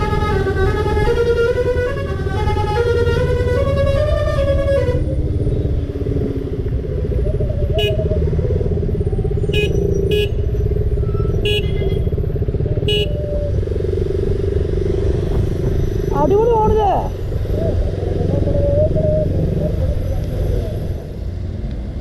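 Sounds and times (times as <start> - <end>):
bus musical horn tune: 0.0 - 5.1
diesel engine running: 0.0 - 22.0.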